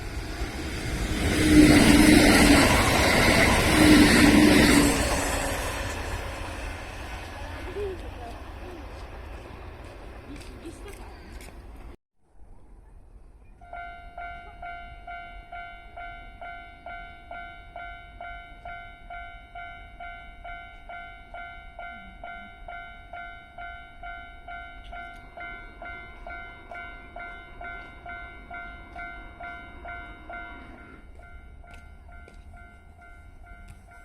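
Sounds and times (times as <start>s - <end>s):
approaching train rumble: 0.0s - 34.0s
level crossing warning bell: 13.6s - 34.0s.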